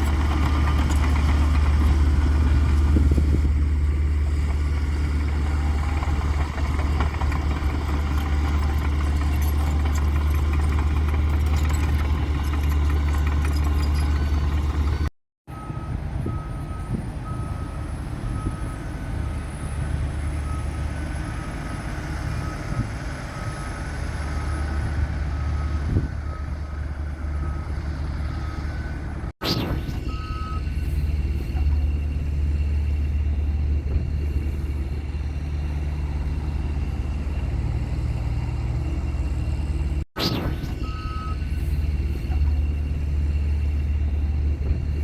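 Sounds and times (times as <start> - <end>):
heavy vehicle engine running: 0.0 - 45.0
backup alarm beeping: 40.2 - 41.4.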